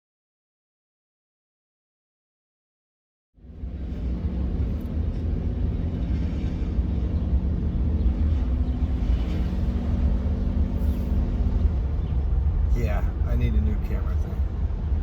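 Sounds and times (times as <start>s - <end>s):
vehicle engine and road noise: 3.4s - 15.0s.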